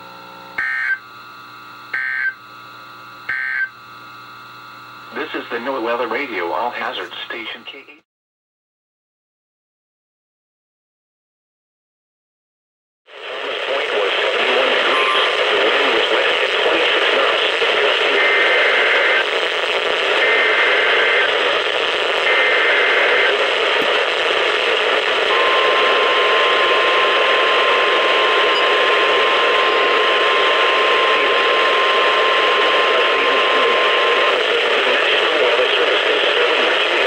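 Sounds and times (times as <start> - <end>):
radio static hiss: 0.0 - 8.0, 13.1 - 37.0
steady warning alarm tone: 1.9 - 2.4, 3.3 - 3.7, 25.3 - 34.3.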